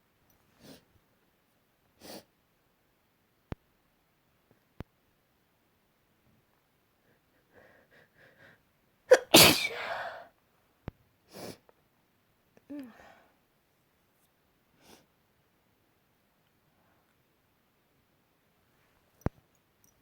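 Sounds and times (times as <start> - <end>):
person sneezing loudly: 9.1 - 10.3.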